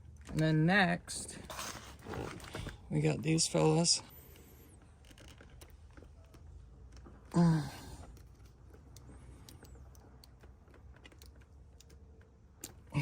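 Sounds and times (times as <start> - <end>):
man sighing: 7.3 - 8.1.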